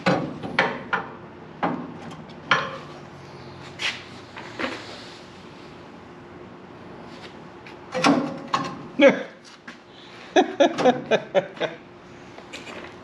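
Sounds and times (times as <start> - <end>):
metal clanks and knocks: 0.0 - 2.9.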